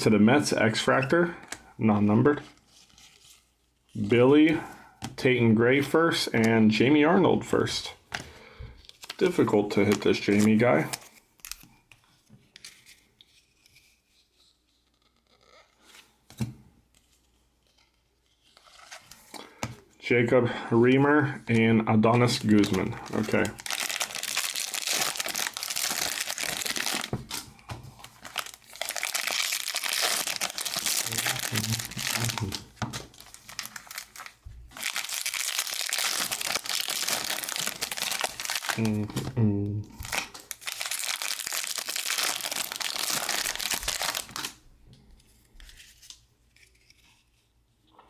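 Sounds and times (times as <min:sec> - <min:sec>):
cards being handled: 0:08.1 - 0:19.9, 0:45.2 - 0:47.6
cards rustling: 0:08.1 - 0:19.9, 0:21.4 - 0:47.5
foil wrappers crinkling: 0:22.0 - 0:39.3, 0:40.0 - 0:44.6.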